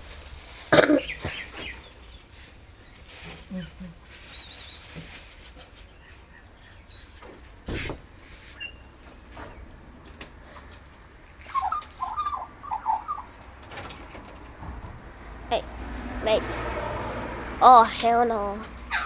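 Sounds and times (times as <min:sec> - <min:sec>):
bird calling: 0:00.8 - 0:02.3, 0:10.6 - 0:14.2, 0:17.6 - 0:19.0.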